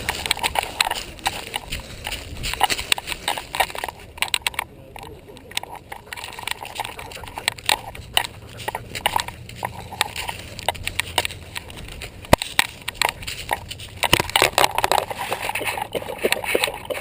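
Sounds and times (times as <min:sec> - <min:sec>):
steady low rumble: 0:00.0 - 0:16.9
camera on collar clicking and knocking: 0:05.5 - 0:17.0.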